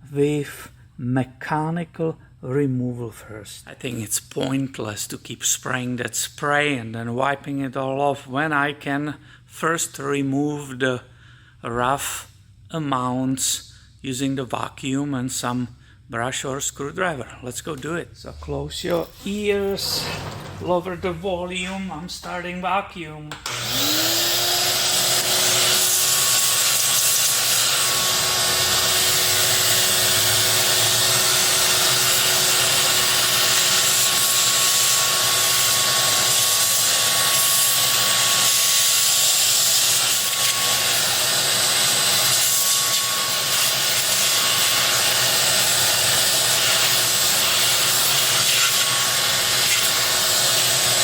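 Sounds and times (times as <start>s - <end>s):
vacuum cleaner running: 18.8s - 22.5s, 23.3s - 51.0s.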